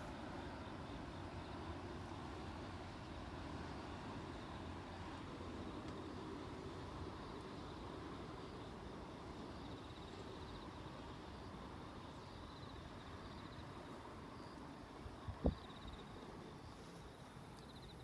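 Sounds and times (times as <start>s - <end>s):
low rumble of distant traffic: 0.0s - 18.0s.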